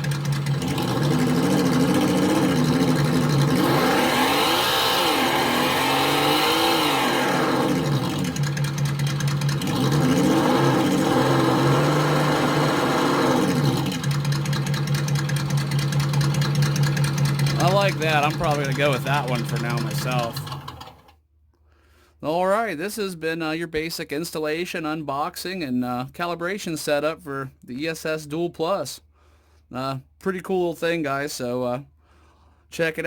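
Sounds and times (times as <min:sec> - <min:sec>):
simulated engine idling and revving: 0:00.0 - 0:21.1.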